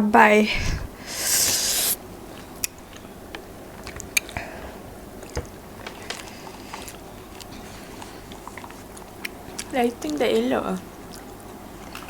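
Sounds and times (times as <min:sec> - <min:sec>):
chewing and biting food: 0:05.1 - 0:12.0.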